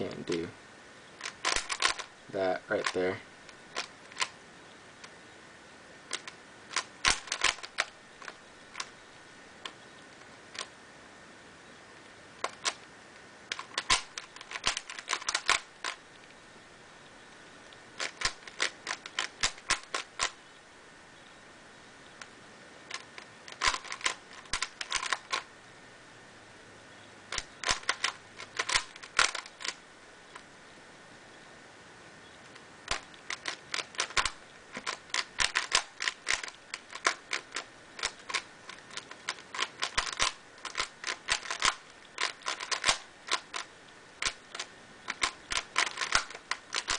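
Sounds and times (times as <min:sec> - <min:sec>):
puzzle cube clicking: 0:01.2 - 0:04.4, 0:06.1 - 0:09.0, 0:09.6 - 0:10.7, 0:12.4 - 0:12.9, 0:13.5 - 0:16.4, 0:17.6 - 0:20.4, 0:22.9 - 0:25.5, 0:27.3 - 0:30.5, 0:32.5 - 0:46.9.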